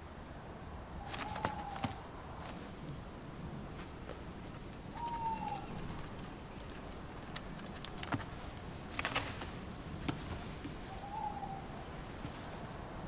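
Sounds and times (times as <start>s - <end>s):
owl whistled call: 1.0s - 2.0s, 5.0s - 5.7s, 10.9s - 11.7s
sharp clicks and ticks: 4.7s - 8.3s.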